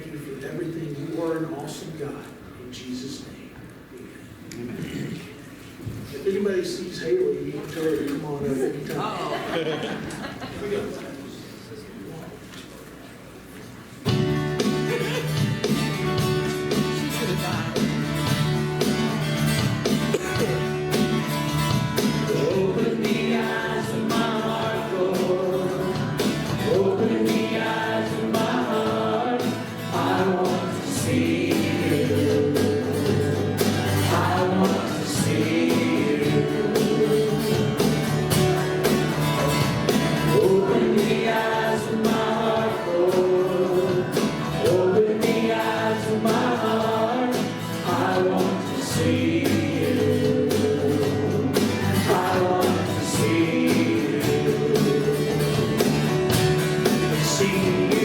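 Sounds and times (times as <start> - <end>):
gospel band playing: 13.9 - 58.0
people singing: 14.6 - 19.5, 20.2 - 58.0.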